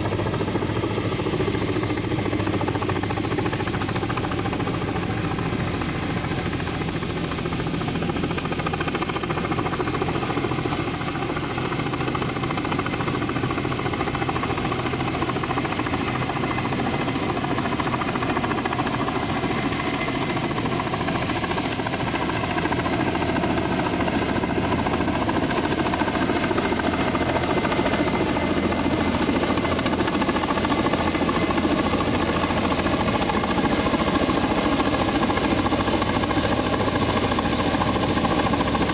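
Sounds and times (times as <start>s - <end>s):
helicopter rotor and turbine: 0.0s - 38.9s.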